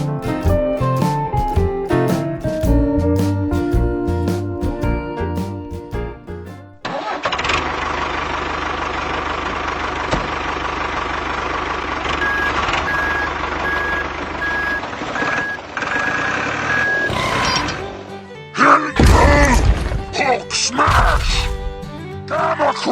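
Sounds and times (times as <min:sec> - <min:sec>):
reversing beeps: 0:12.2 - 0:17.8.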